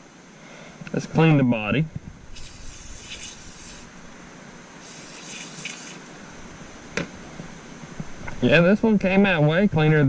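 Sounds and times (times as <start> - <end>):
short hisses: 2.3 - 4.0, 4.8 - 6.1.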